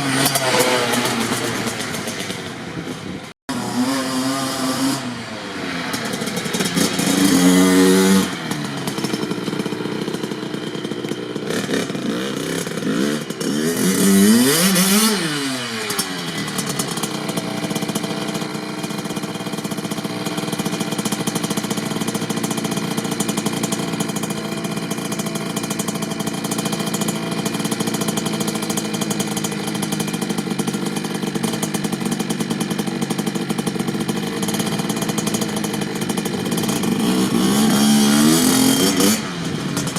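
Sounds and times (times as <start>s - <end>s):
two-stroke engine revving: 0.0s - 39.9s.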